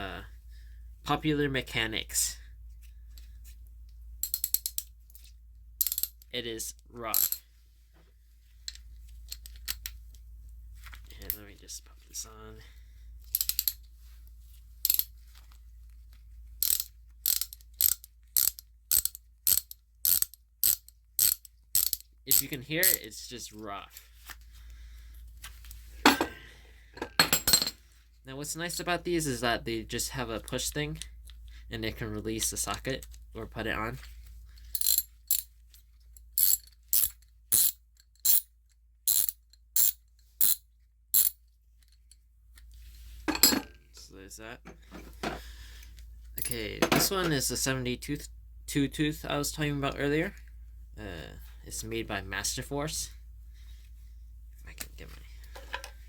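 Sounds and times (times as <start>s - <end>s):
ratchet clicking: 4.2s - 4.9s, 5.8s - 6.2s, 7.2s - 7.4s, 13.3s - 13.8s, 14.8s - 15.1s, 16.6s - 23.0s, 34.7s - 35.5s, 36.4s - 38.5s, 39.1s - 40.6s, 41.2s - 41.4s.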